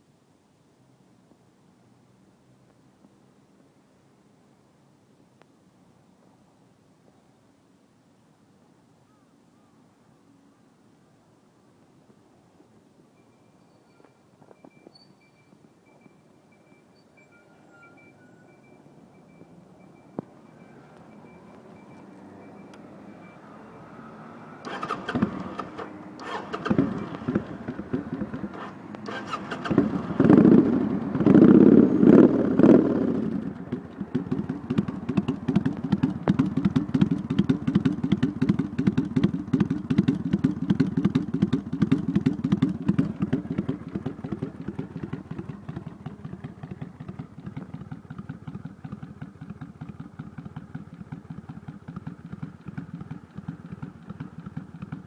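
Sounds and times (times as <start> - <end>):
motorcycle engine starting and revving: 20.0 - 55.0
motorcycle engine idling: 20.4 - 55.0.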